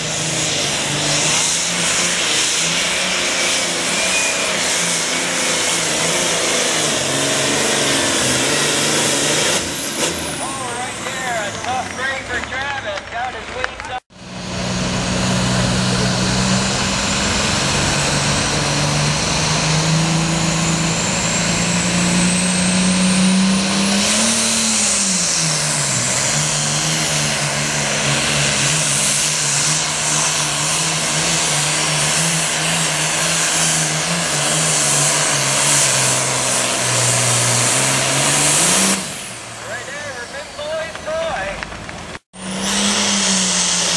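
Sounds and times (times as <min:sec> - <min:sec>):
diesel engine at full throttle: 0:00.0 - 0:43.9
high whistle: 0:04.0 - 0:04.6.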